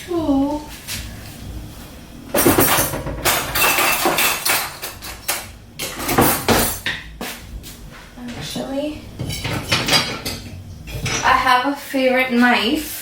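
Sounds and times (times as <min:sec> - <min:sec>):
metal utensils clattering: 0:02.3 - 0:07.1, 0:09.2 - 0:11.7.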